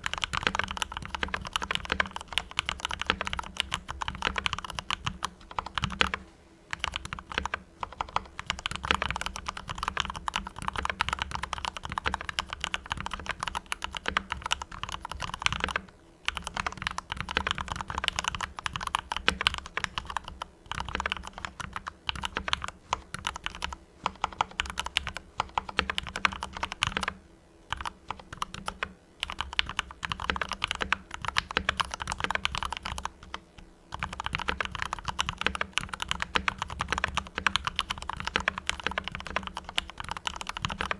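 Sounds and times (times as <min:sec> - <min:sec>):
fast mechanical keyboard typing: 0:00.0 - 0:40.9.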